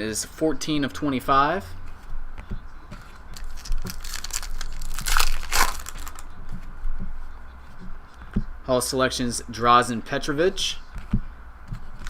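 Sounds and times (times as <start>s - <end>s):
wrapper crinkling and tearing: 3.4s - 6.3s.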